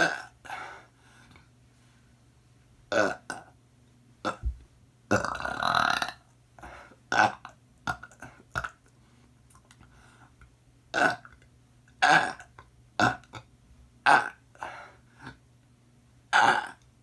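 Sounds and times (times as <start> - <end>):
person burping: 0.0 - 0.4, 2.9 - 3.5, 4.2 - 4.5, 5.1 - 6.2, 11.0 - 11.3, 12.0 - 13.5, 14.1 - 14.4, 16.3 - 16.8.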